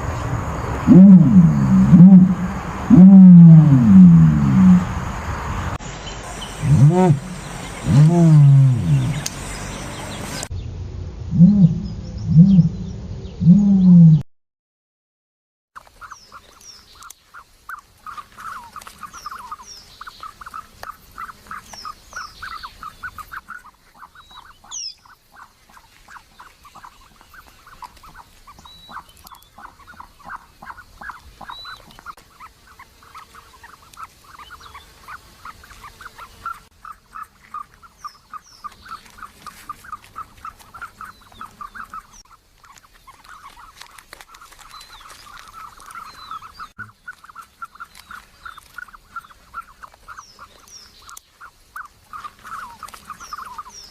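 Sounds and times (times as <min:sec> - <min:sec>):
birds calling in pulsed notes: 0:00.0 - 0:14.2, 0:16.0 - 0:53.9
high bird chirps: 0:05.8 - 0:10.7.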